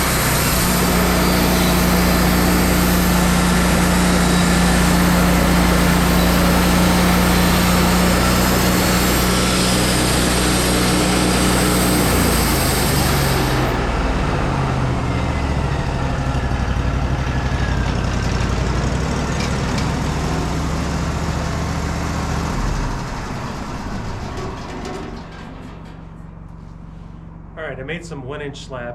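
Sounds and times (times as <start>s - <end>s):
sawmill engine running: 0.0s - 28.9s.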